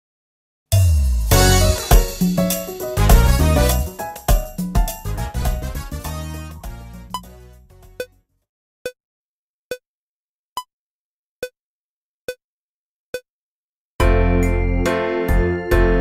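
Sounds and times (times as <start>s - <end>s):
keyboard accompaniment with bass: 0.8s - 8.1s, 14.0s - 16.0s.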